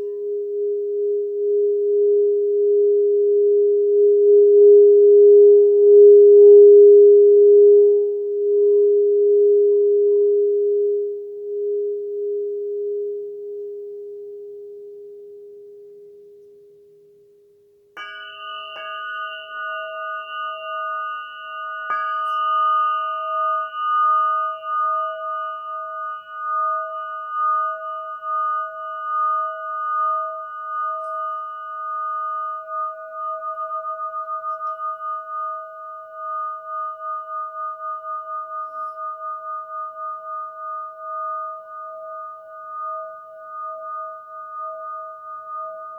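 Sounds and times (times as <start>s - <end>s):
high wavering crystal tone: 0.0s - 15.9s, 18.0s - 45.9s
low crystal bowl tone: 0.0s - 45.9s
crystal bowl struck: 18.0s - 45.9s.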